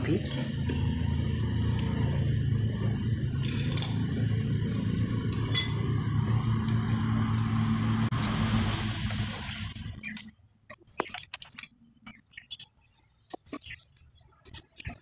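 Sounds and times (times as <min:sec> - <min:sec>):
steady low hum: 0:00.0 - 0:10.2
metal tools clinking and knocking: 0:03.4 - 0:04.1, 0:05.3 - 0:05.8.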